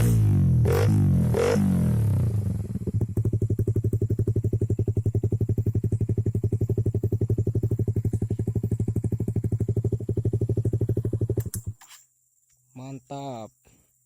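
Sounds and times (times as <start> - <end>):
motorcycle engine idling: 1.2 - 11.8.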